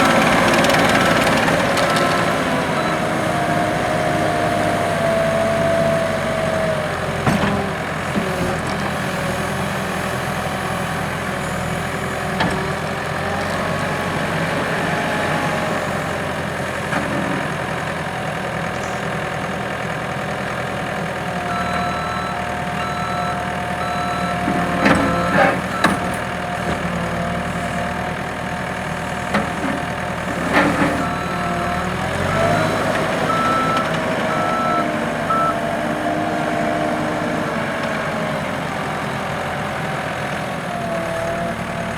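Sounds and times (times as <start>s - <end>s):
diesel engine running: 0.0s - 41.9s
backup alarm beeping: 21.5s - 26.1s, 32.3s - 35.6s.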